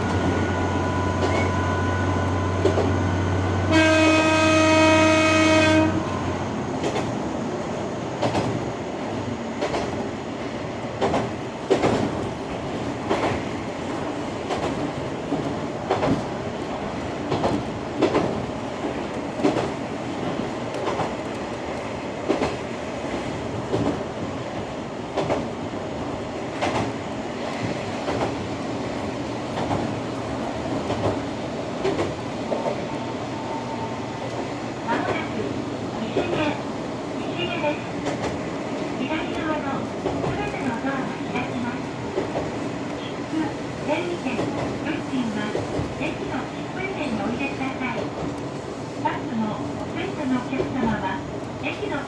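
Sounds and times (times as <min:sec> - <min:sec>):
train wheels clacking on rail joints: 0:01.1 - 0:01.6, 0:02.2 - 0:03.2, 0:06.1 - 0:07.4, 0:08.1 - 0:08.7, 0:09.5 - 0:10.2, 0:10.9 - 0:25.6, 0:26.5 - 0:32.9, 0:38.0 - 0:38.6
train horn: 0:03.6 - 0:06.2.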